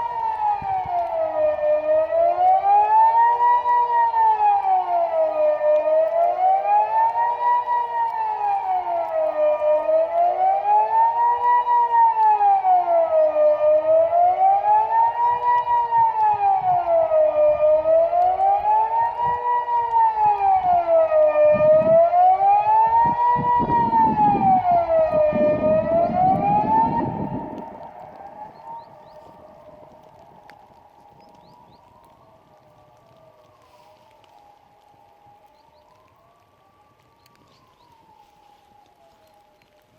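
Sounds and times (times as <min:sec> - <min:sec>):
rising and falling siren: 0:00.0 - 0:39.9
low rumbling noise: 0:20.4 - 0:32.0.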